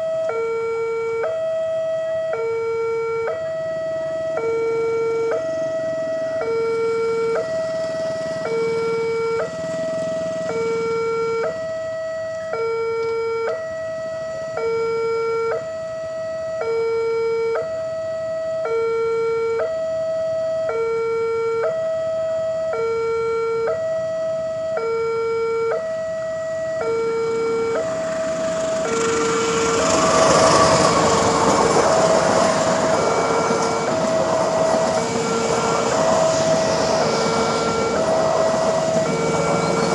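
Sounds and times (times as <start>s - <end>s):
level-crossing alarm two-tone: 0.0s - 39.9s
passing train rumble: 2.8s - 12.2s, 26.6s - 39.9s.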